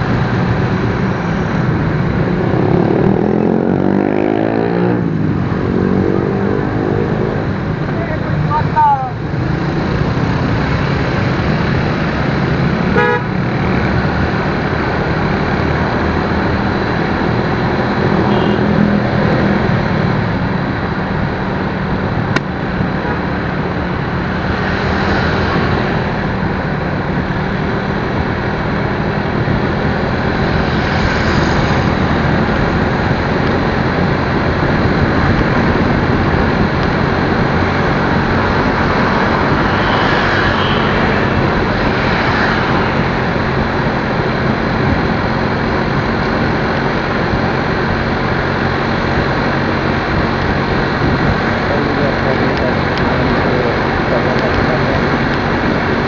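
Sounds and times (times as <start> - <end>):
road traffic engine hum: 0.0 - 56.0
rushing road noise: 0.0 - 56.0
short horn toot: 13.0 - 13.3.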